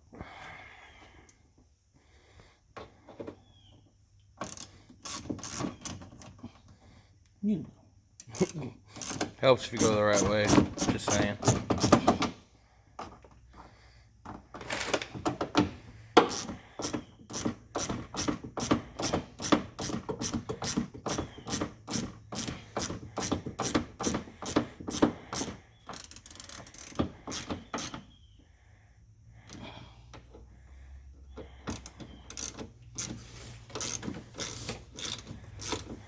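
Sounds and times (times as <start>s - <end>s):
hand ratchet clicking: 4.4s - 6.3s, 8.2s - 12.3s, 16.2s - 28.1s, 31.6s - 36.0s.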